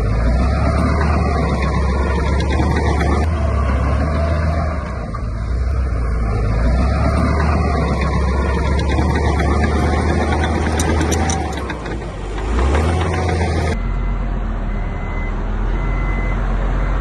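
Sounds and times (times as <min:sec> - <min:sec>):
diesel machinery engine running: 0:00.0 - 0:17.0
reversing alarm beeping: 0:13.7 - 0:17.0.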